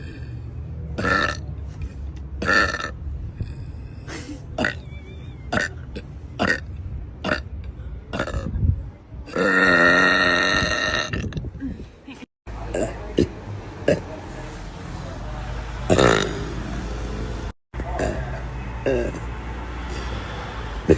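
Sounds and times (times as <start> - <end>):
woman burping: 4.6 - 4.8, 5.5 - 7.5, 8.1 - 8.5, 9.3 - 11.5.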